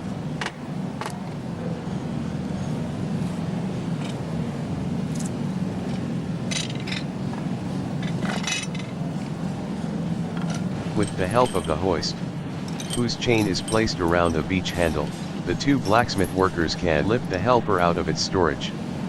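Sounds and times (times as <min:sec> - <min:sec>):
steady low hum: 0:00.0 - 0:19.0
metal parts clinking and rattling: 0:06.5 - 0:07.1, 0:08.0 - 0:08.9.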